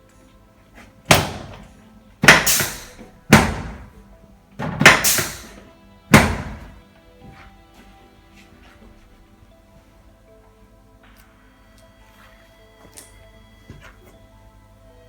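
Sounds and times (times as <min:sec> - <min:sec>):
drop table sections snapping down: 0:01.1 - 0:04.0, 0:04.6 - 0:06.8.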